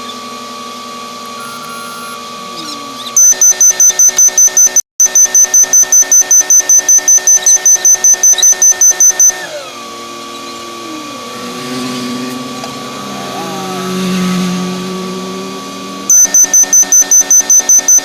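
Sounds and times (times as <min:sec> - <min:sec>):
electronic warning beeper: 0:01.3 - 0:02.2, 0:03.2 - 0:09.5, 0:16.1 - 0:18.0
machine engine running: 0:06.3 - 0:18.0.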